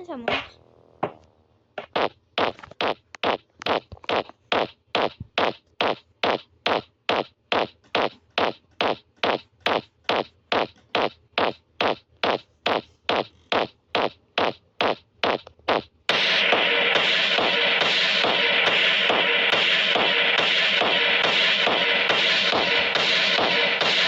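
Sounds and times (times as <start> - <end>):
fart-like sound: 1.8 - 18.8.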